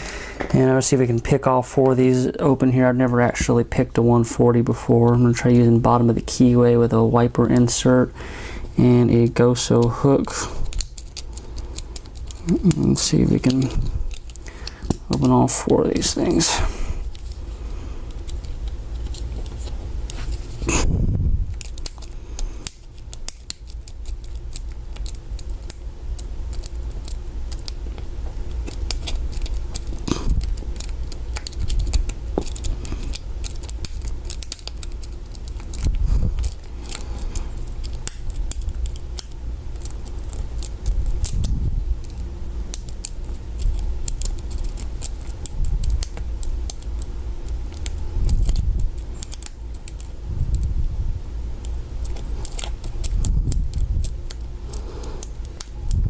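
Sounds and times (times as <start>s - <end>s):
lock picks clicking and scraping: 10.6s - 16.1s.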